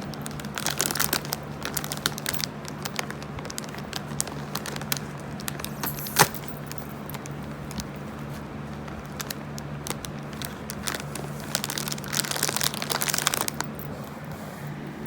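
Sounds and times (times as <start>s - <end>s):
wrapper crinkling: 0.0s - 13.9s.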